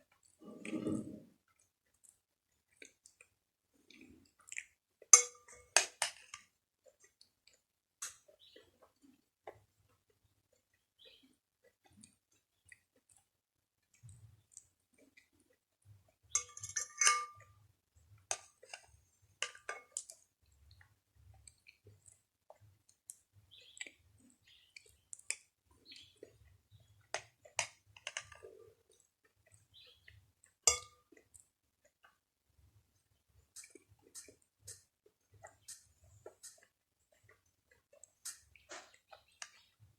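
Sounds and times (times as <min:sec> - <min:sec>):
chewing: 0:00.0 - 0:16.3, 0:18.3 - 0:32.2, 0:32.9 - 0:39.9
spoon clinking against dish: 0:05.2 - 0:06.0, 0:16.4 - 0:17.5, 0:30.7 - 0:31.0.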